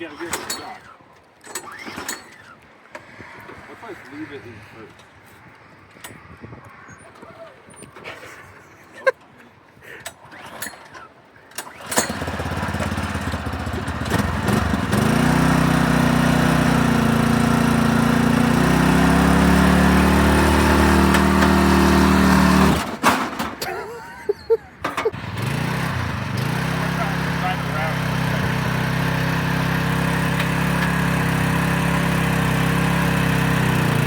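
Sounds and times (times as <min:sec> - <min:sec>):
lawn mower engine running: 0:00.0 - 0:02.6, 0:10.2 - 0:23.7, 0:24.8 - 0:34.0.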